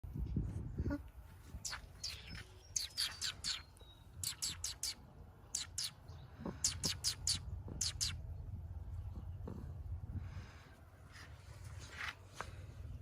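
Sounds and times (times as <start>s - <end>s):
low steady background rumble: 0.1s - 13.0s
small bird chirping: 1.5s - 9.6s.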